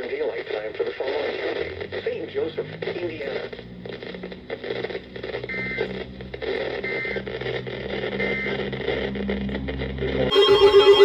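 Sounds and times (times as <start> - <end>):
two-tone warbling data bursts: 10.3 - 11.0.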